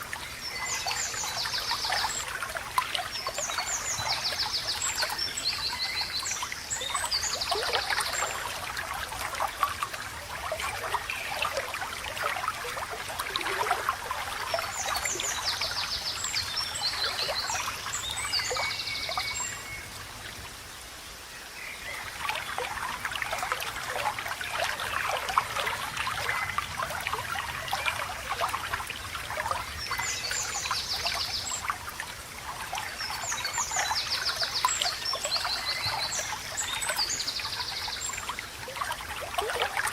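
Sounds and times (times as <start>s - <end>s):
songbirds trilling: 0.0s - 20.0s, 32.6s - 39.9s
small stream babbling: 0.0s - 39.9s.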